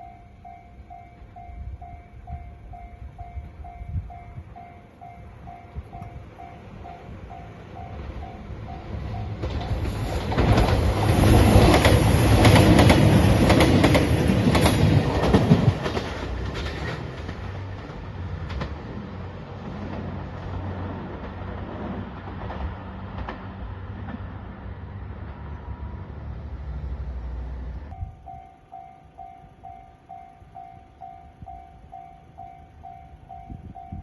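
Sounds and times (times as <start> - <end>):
level-crossing warning bell: 0.0 - 10.2, 27.9 - 34.0
train wheels clacking over rails: 6.0 - 24.5.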